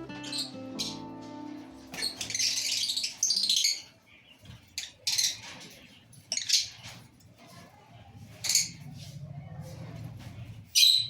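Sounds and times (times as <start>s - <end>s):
lovebirds chirping: 0.0s - 7.0s.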